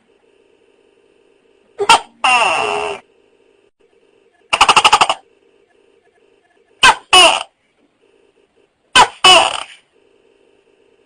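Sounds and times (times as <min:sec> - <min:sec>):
gecko calling: 0:01.8 - 0:03.1.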